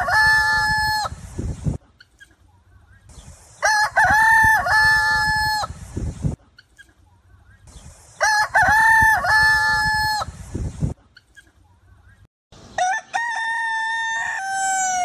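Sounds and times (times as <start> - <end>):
rooster crowing: 12.8 - 15.0.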